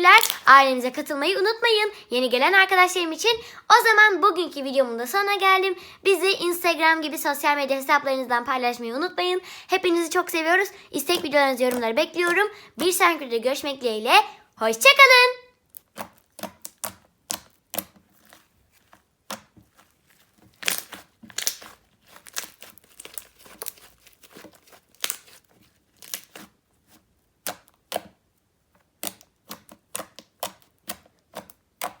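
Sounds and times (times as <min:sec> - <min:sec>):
slime crackling and popping: 0:00.0 - 0:00.5, 0:15.6 - 0:26.5, 0:29.0 - 0:32.0.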